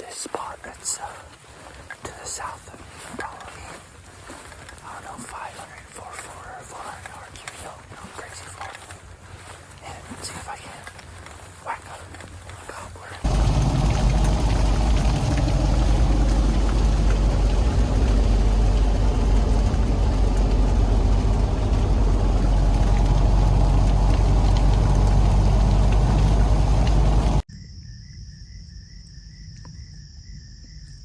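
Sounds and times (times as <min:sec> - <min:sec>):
insects chirping: 0:00.0 - 0:31.0
loud rumbling and rushing: 0:13.2 - 0:27.4.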